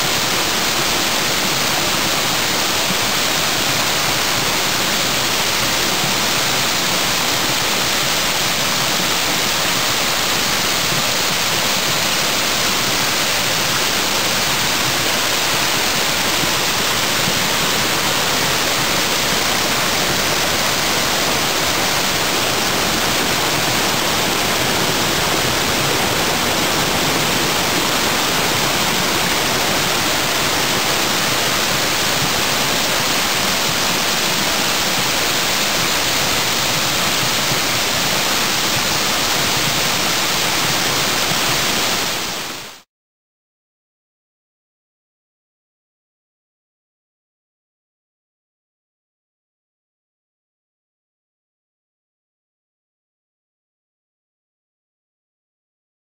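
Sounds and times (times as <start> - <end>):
water pouring over rock ledge: 0.0 - 42.8.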